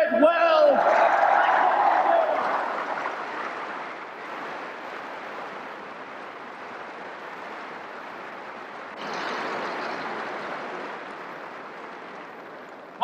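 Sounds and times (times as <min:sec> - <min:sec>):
audience applauding: 0:00.7 - 0:05.3.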